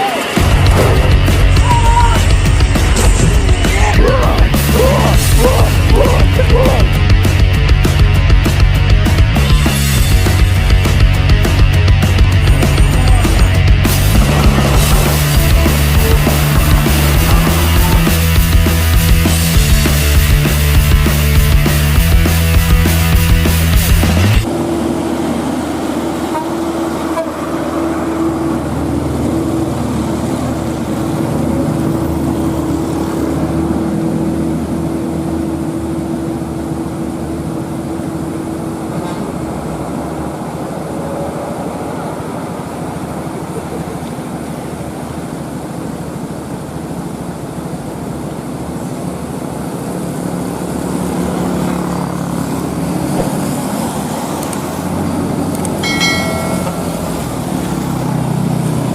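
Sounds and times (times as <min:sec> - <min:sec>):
truck and traffic engines: 0:00.0 - 0:58.9
horn-like drone: 0:15.2 - 0:19.6, 0:26.1 - 0:28.8.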